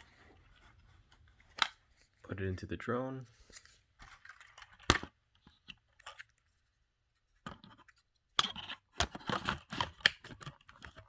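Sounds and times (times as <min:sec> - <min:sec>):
plastic scraping and rubbing: 0:07.4 - 0:11.0.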